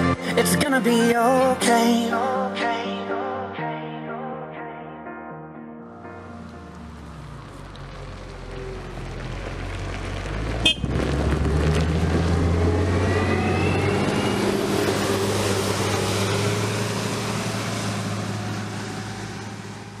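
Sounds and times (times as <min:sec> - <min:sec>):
heavy engine running: 0:06.1 - 0:20.0.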